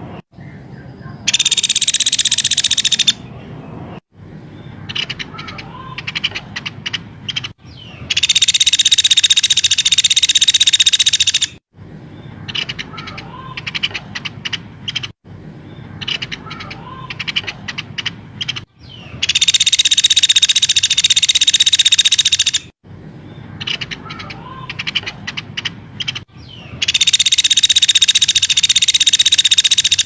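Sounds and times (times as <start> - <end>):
sharp bird chipping notes: 0.0 - 3.3, 4.8 - 11.6, 12.5 - 22.7, 23.6 - 30.0
songbird buzzing trills: 8.1 - 11.6, 19.2 - 22.7, 26.8 - 30.0.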